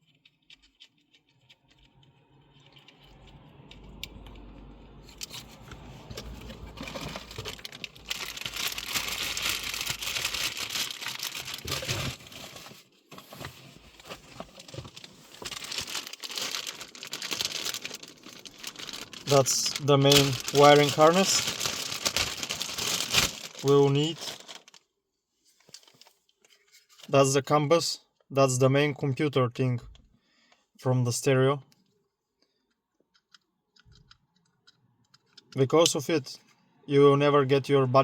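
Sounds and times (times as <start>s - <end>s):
packaging crinkling and rustling: 5.1s - 24.9s, 25.5s - 27.1s.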